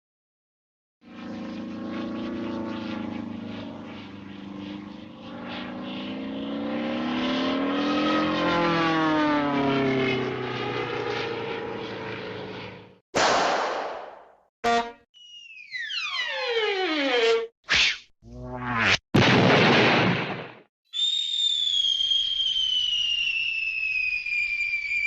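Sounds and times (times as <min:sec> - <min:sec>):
cartoon propeller plane drone: 0:01.0 - 0:13.0, 0:13.9 - 0:19.0.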